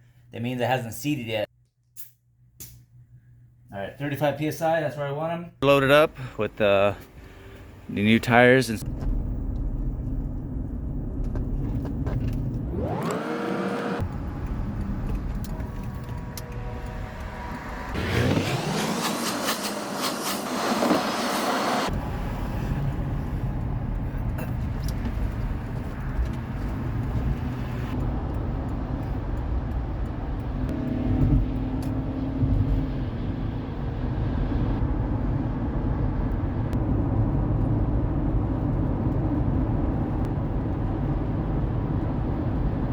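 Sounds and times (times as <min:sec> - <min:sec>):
car engine accelerating: 0:08.8 - 0:42.9
tire noise on road: 0:08.8 - 0:42.9.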